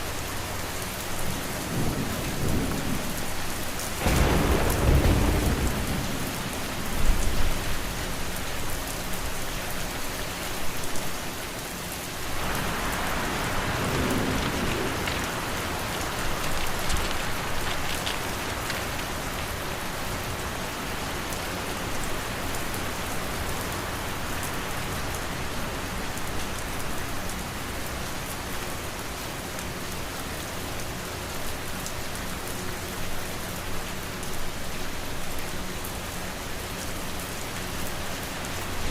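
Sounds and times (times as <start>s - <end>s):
steady rain falling: 0.0s - 38.9s
low rumble of thunder: 1.1s - 8.8s, 12.2s - 21.0s.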